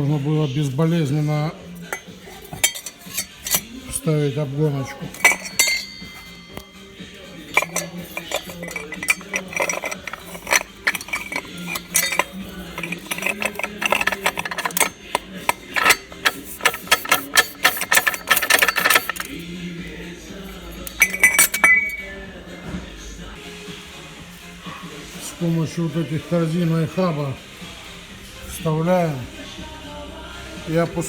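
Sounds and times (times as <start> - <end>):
metal parts clinking and knocking: 1.8 - 19.5, 20.5 - 22.2.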